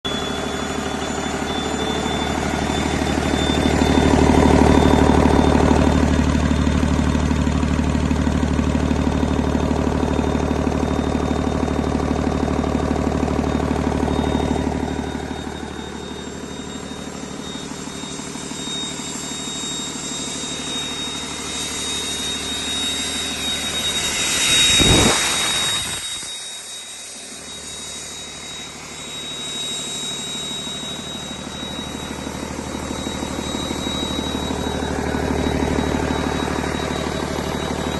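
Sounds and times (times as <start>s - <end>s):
diesel engine running: 0.0s - 37.9s
high whistle: 0.0s - 37.9s
loud rush: 22.5s - 27.5s.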